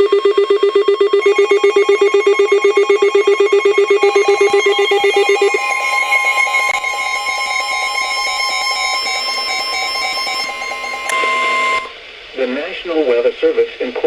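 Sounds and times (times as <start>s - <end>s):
steady higher alert tones: 0.9s - 12.0s.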